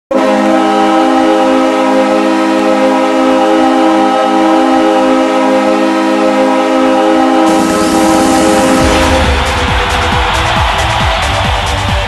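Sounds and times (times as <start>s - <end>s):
goal horn chord: 0.1s - 12.0s.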